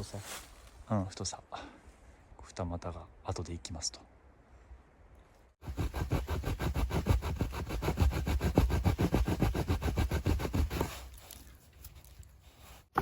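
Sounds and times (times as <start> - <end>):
wood being scraped by hand: 5.6 - 13.0.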